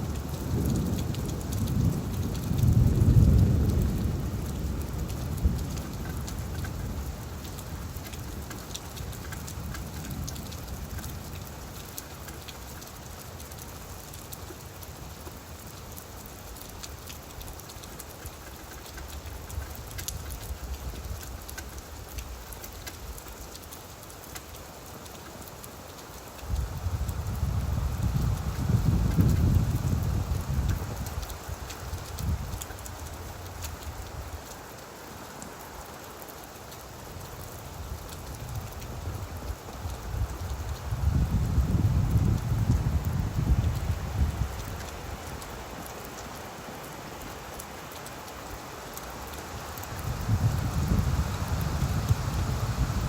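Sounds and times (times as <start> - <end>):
thunder rumble: 0.0 - 7.4, 26.6 - 32.6, 38.4 - 45.0, 49.9 - 53.0
rain falling on leaves: 0.0 - 53.0.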